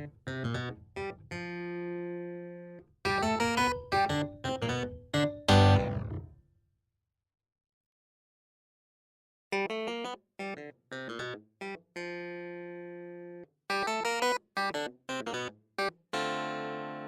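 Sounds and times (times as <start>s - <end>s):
instrumental background music: 0.0s - 6.2s.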